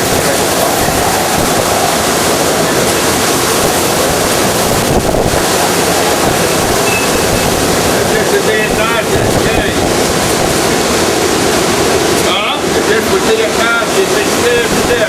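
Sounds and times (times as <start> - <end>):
wind buffeting the microphone: 0.0 - 12.2
storm wind rushing: 0.0 - 12.3.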